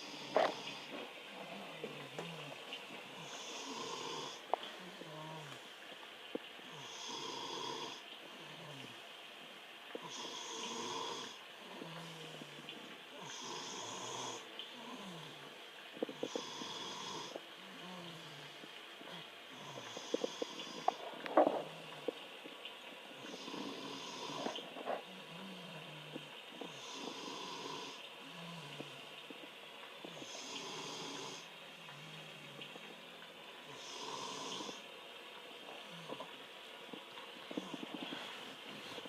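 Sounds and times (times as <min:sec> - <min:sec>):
snoring: 0:00.0 - 0:02.6, 0:03.2 - 0:05.6, 0:06.7 - 0:08.9, 0:10.0 - 0:15.4, 0:16.0 - 0:18.4, 0:19.0 - 0:21.9, 0:23.2 - 0:29.0, 0:30.0 - 0:32.6, 0:33.6 - 0:34.8.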